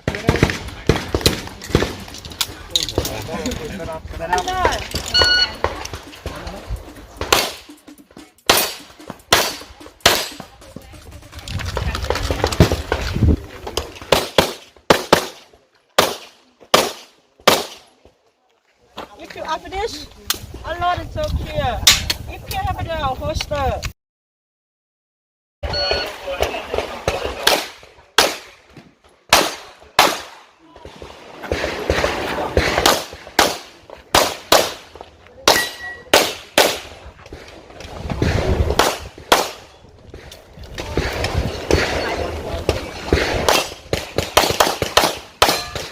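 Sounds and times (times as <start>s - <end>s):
handgun shots: 8.5s - 10.5s.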